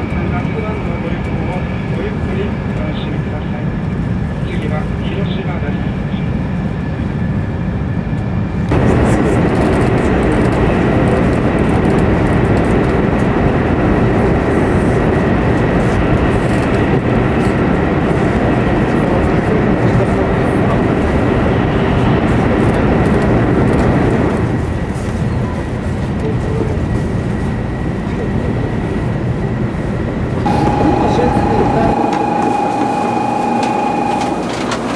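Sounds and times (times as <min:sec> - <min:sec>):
train interior running rumble: 0:00.0 - 0:34.9
thin steady high tone: 0:30.5 - 0:34.5.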